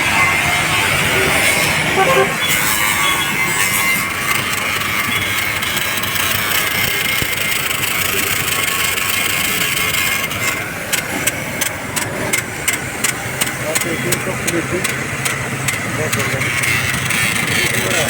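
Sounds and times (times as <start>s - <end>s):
engine running: 0.0s - 18.0s.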